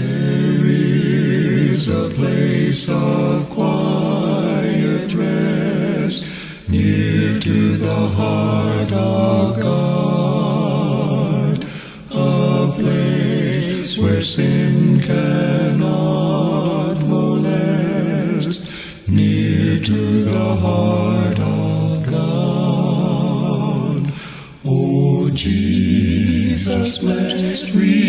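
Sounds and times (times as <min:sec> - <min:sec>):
vocal quartet singing a cappella: 0:00.0 - 0:28.0.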